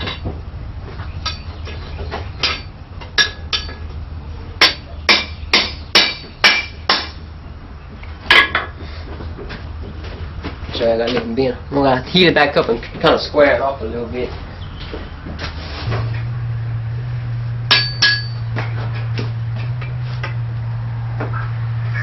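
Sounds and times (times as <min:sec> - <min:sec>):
hammer striking steel on anvil: 0:02.4 - 0:03.8, 0:04.6 - 0:07.2, 0:17.7 - 0:18.7
steady low hum: 0:14.4 - 0:22.0.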